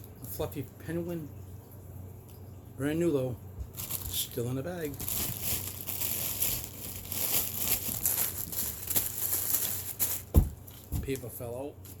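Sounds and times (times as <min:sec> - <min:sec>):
plastic bag crinkling: 0:03.6 - 0:11.4.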